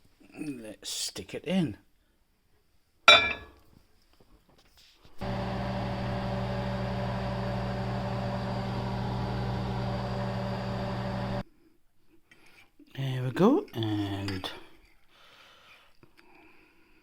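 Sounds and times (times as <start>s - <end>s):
microwave oven humming: 5.2s - 11.4s.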